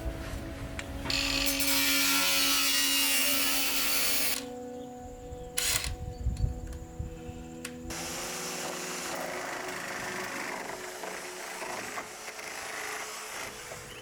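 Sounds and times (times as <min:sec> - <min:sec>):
quiet background music: 0:00.0 - 0:14.0
power tool running on wood: 0:01.1 - 0:04.5, 0:07.9 - 0:14.0.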